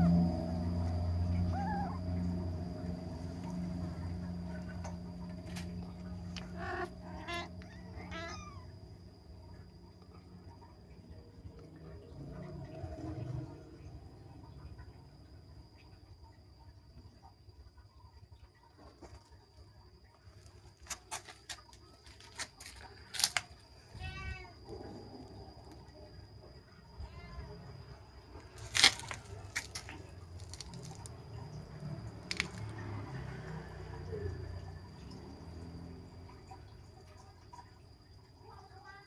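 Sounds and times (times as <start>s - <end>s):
steady low hum: 0.0s - 18.8s
kitten meowing: 6.4s - 8.7s.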